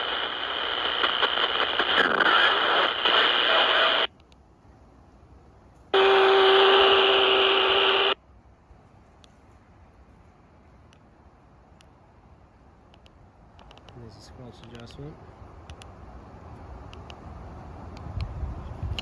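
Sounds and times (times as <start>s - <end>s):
radio hiss and crackle: 0.0s - 4.4s, 5.9s - 8.2s.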